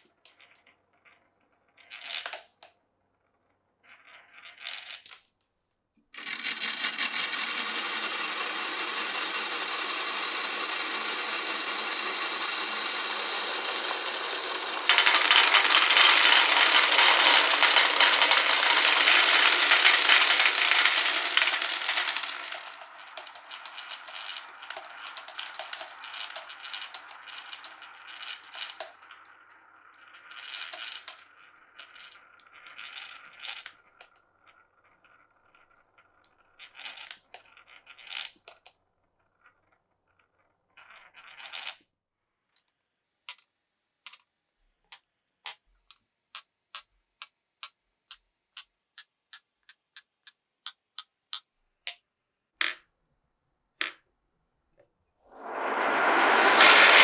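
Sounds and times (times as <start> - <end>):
marbles clattering down marble run: 6.2 - 28.8.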